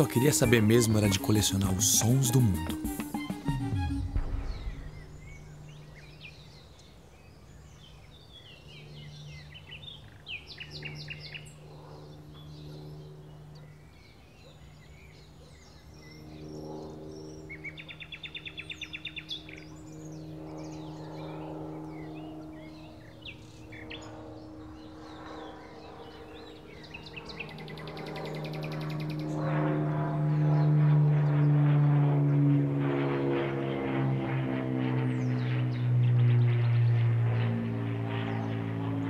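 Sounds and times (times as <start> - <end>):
steady low hum: 0.0 - 14.1, 19.6 - 39.0
small birds chirping: 4.0 - 29.7, 38.1 - 39.0.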